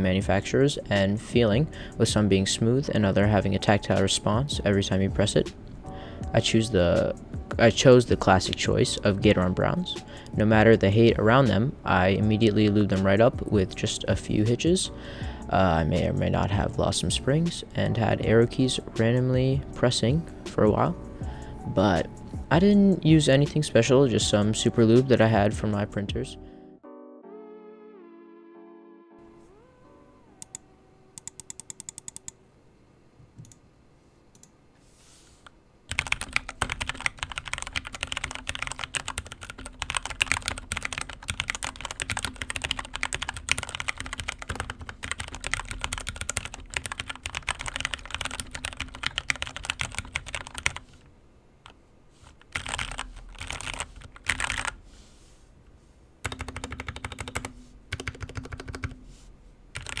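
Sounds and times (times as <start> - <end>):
mechanical keyboard typing: 31.2 - 32.4, 35.9 - 50.8, 52.3 - 54.8, 56.2 - 59.0, 59.8 - 60.0.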